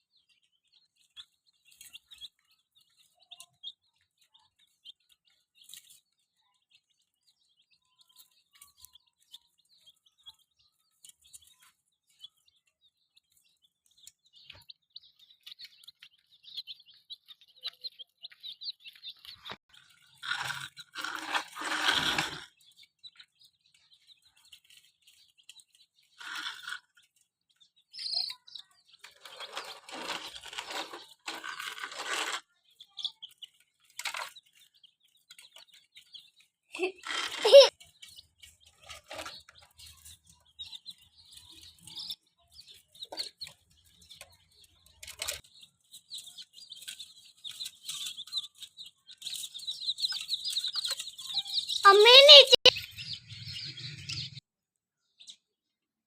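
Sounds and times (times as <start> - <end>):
chicks peeping: 0.0 - 54.4, 55.0 - 55.8.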